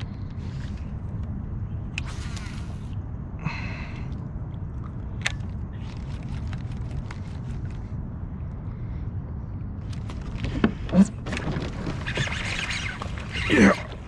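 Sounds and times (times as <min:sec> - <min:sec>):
steady low rumble: 0:00.0 - 0:14.0
fishing line hissing off reel: 0:02.0 - 0:03.0
reel and handling clicks: 0:05.2 - 0:07.9.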